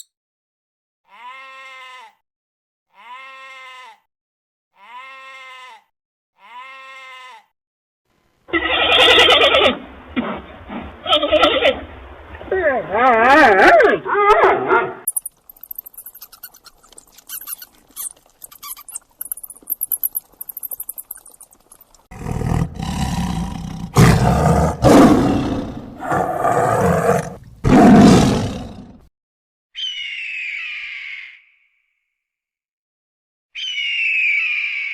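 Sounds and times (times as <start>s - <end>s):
faint high squeaking: 15.1s - 22.0s
large animal roaring: 22.1s - 29.0s.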